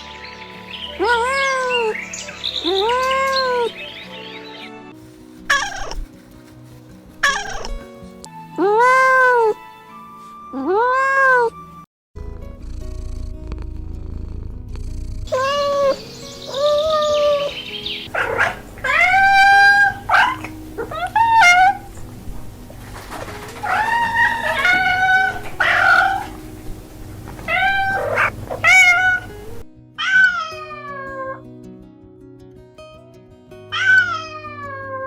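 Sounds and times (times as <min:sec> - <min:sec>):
soft background music: 0:00.0 - 0:35.0
cats meowing: 0:00.9 - 0:02.0, 0:02.6 - 0:03.8, 0:05.5 - 0:06.0, 0:07.2 - 0:07.8, 0:10.6 - 0:11.5, 0:15.3 - 0:22.1, 0:23.2 - 0:26.5, 0:27.3 - 0:31.4, 0:33.7 - 0:35.0.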